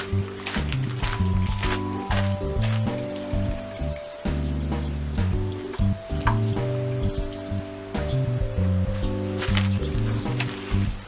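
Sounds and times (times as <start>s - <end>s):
lounge music with a beat: 0.0s - 11.0s.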